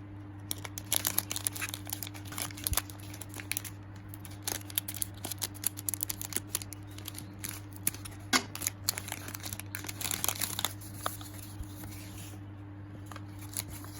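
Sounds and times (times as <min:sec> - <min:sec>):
steady low hum: 0:00.0 - 0:13.9
packaging crinkling and rustling: 0:00.4 - 0:12.4, 0:13.0 - 0:13.9.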